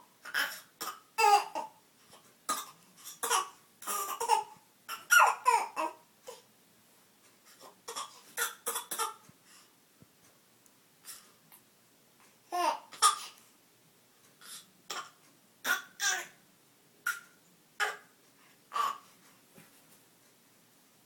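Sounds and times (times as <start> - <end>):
baby fake coughing: 0.2 - 1.8, 2.5 - 6.5, 7.9 - 9.2, 12.5 - 13.4, 14.5 - 16.4, 17.0 - 18.1, 18.7 - 19.1.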